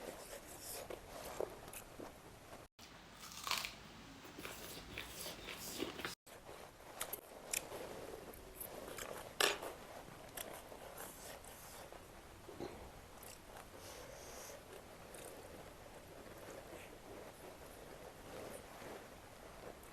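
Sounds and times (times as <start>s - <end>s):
person biting and chewing food: 2.8s - 6.2s
crisp crunches: 3.2s - 6.2s.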